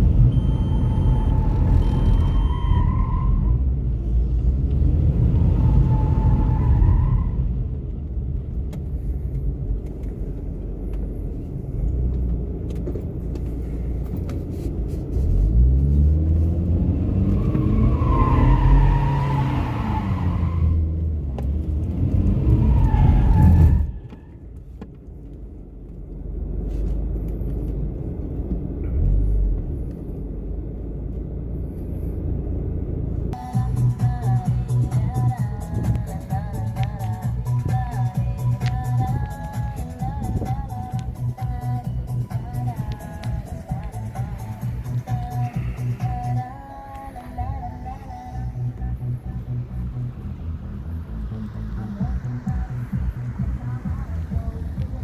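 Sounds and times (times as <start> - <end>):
car engine revving: 14.1 - 24.2, 31.6 - 55.0.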